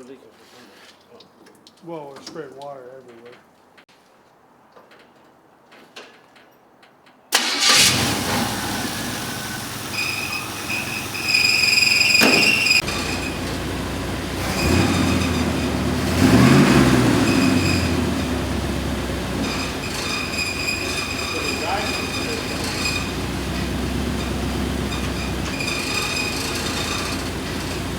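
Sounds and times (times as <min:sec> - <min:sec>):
pickup truck engine running: 0:07.4 - 0:27.9.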